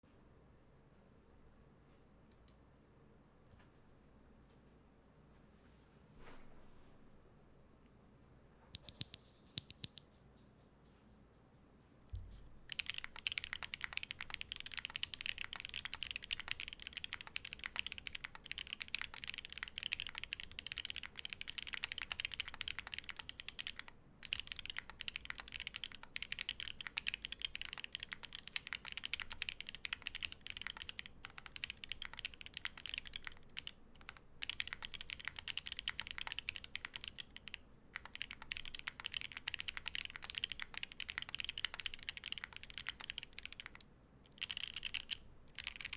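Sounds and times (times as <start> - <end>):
mechanical keyboard typing: 8.8 - 10.0, 12.7 - 45.9.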